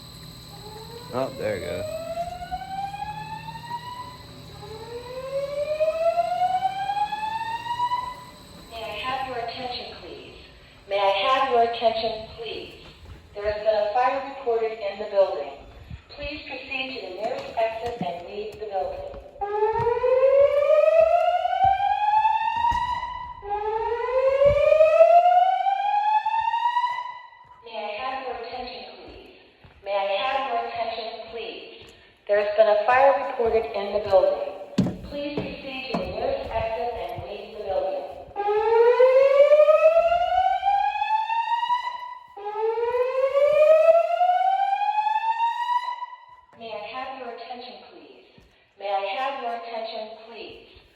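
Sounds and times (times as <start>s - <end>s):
fire alarm whoop tone: 0.0s - 15.9s, 19.4s - 27.6s, 34.8s - 46.5s.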